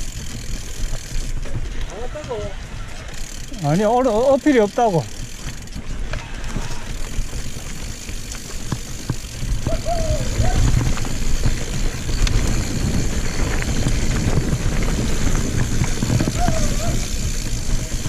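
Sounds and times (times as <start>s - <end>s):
bike rattling over bumps: 0.0s - 18.0s
bike tyres on dirt: 0.0s - 18.0s
wind rumbling over microphone: 8.7s - 18.0s.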